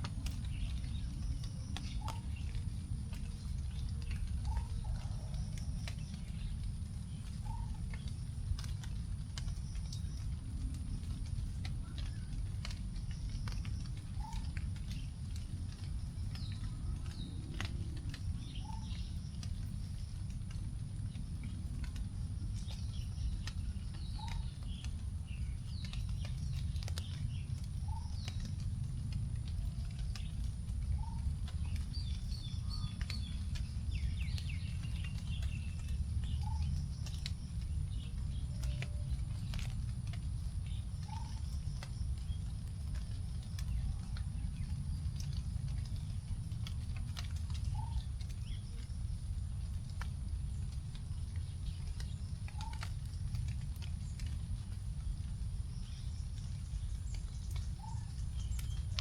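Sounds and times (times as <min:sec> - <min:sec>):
rain dripping on leaves: 0:00.0 - 0:59.0
steady low rumble: 0:00.0 - 0:59.0
birds chirping: 0:29.6 - 0:45.8.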